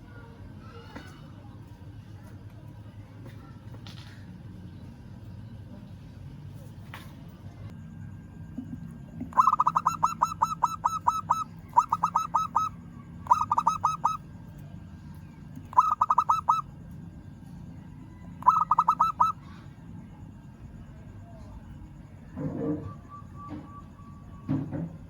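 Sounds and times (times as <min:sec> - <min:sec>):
dove calling rapid notes: 0:09.2 - 0:14.3, 0:15.6 - 0:16.8, 0:18.3 - 0:19.6.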